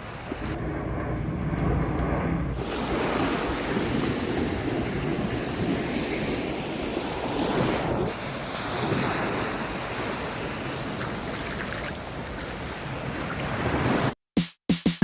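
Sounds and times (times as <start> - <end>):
wind buffeting microphone: 0.0 - 14.1
surf breaking on a beach: 2.6 - 14.2.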